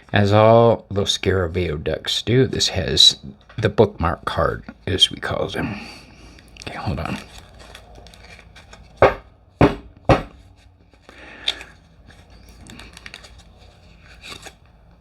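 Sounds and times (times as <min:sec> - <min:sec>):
cards creaking and crackling: 0:00.0 - 0:09.6, 0:10.4 - 0:15.0
sharp knocks: 0:09.0 - 0:10.4.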